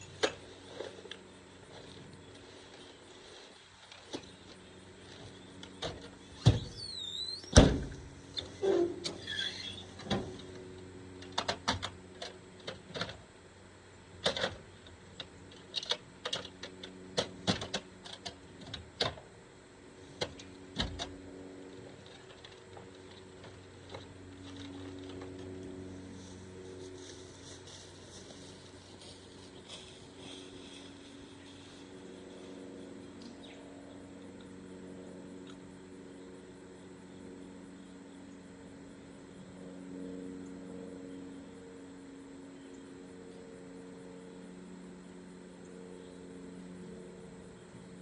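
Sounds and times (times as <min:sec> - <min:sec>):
faint steady hum: 0:00.0 - 0:48.0
short high squeak: 0:06.7 - 0:07.6, 0:08.4 - 0:10.0.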